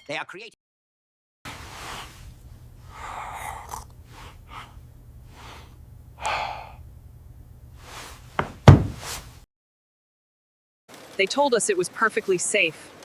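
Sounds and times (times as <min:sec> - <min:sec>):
short sharp breaths: 0:01.5 - 0:06.8
loud thump: 0:08.4 - 0:09.2.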